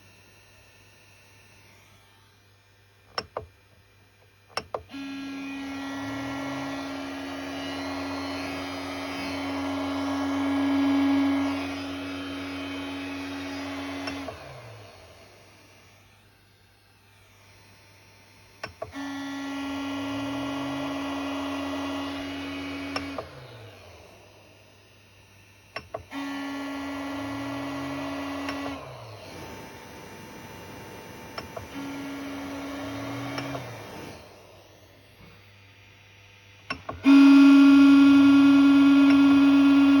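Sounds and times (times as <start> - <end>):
printer humming drone: 4.6 - 17.8, 18.5 - 25.1, 25.7 - 40.0.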